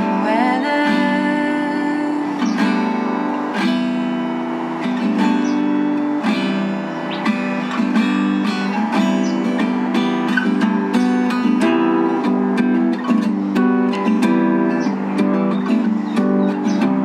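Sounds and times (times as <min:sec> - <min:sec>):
person singing: 0:00.0 - 0:03.1
acoustic guitar strumming: 0:00.0 - 0:17.0.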